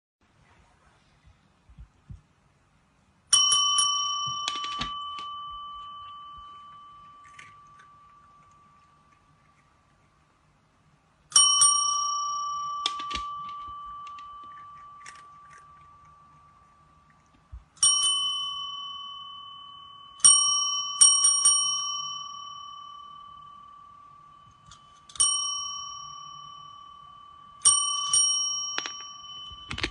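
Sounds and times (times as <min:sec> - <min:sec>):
small metal bell struck: 0:03.3 - 0:09.1, 0:11.3 - 0:16.6, 0:17.8 - 0:29.9.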